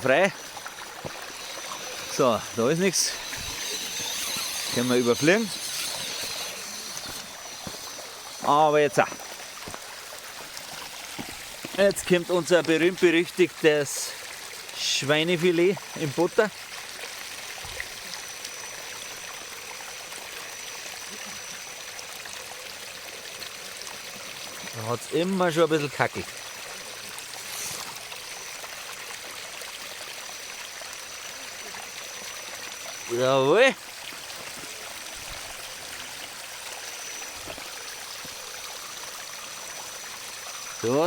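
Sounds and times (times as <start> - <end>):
faint high whine: 0.0 - 10.4
waterfall running over rocks: 0.0 - 41.0.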